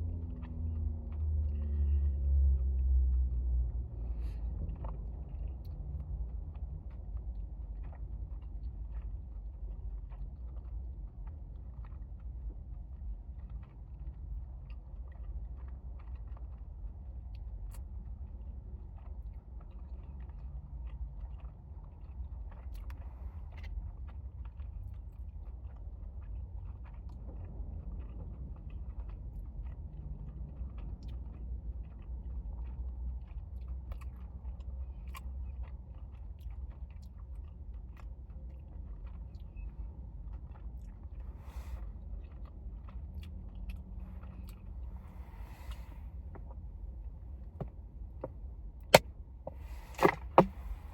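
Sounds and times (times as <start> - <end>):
low rumble: 0.0 - 16.9
wet chewing clicks and smacks: 0.0 - 50.9.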